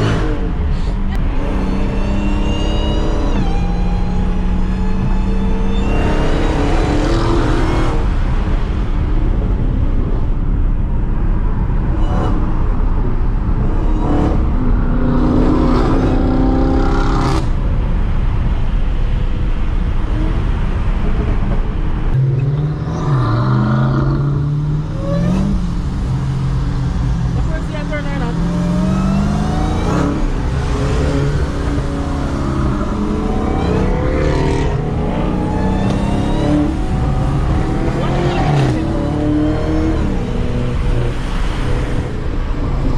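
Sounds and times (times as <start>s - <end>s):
car engine revving through gears: 0.0s - 8.8s, 13.5s - 17.5s, 22.1s - 42.9s
road and tyre noise: 0.0s - 42.9s.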